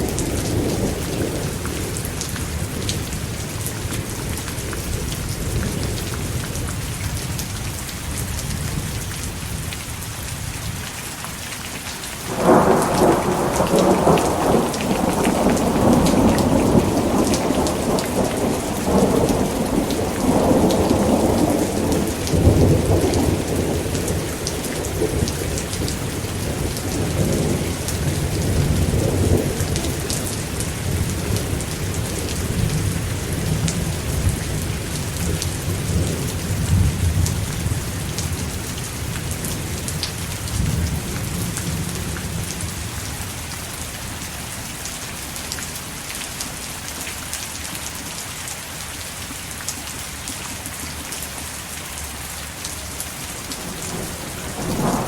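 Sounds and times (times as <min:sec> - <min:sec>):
heavy rain: 0:00.0 - 0:55.0
rolling thunder: 0:12.3 - 0:42.9, 0:53.5 - 0:55.0.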